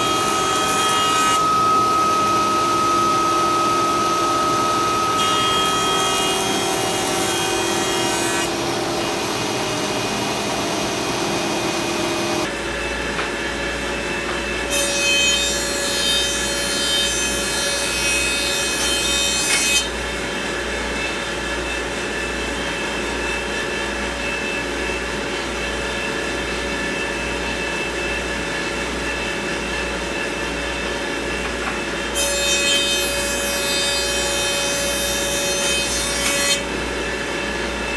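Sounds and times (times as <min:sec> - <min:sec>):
rough high wood cutting noise: 0:00.0 - 0:09.7
woodworking power tool running: 0:00.0 - 0:37.9.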